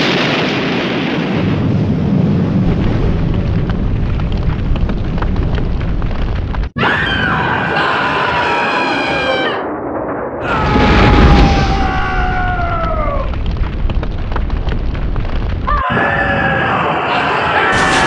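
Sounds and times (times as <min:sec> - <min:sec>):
explosion boom: 0:00.0 - 0:06.8, 0:09.1 - 0:16.6, 0:17.4 - 0:18.0
crackling and rumbling: 0:00.0 - 0:18.0
wailing cries falling in pitch: 0:06.8 - 0:09.6, 0:10.4 - 0:13.3
long falling scream: 0:06.8 - 0:09.7, 0:10.4 - 0:13.3, 0:15.7 - 0:18.0.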